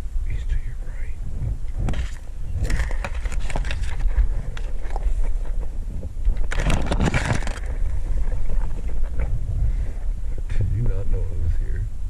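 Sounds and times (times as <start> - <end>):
low rumble on microphone: 0.0 - 12.0
scraping and rustling: 1.3 - 10.6.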